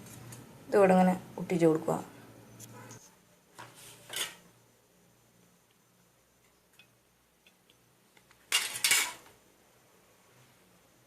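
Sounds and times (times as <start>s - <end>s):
rustling scrapes from crafting: 2.8s - 4.5s.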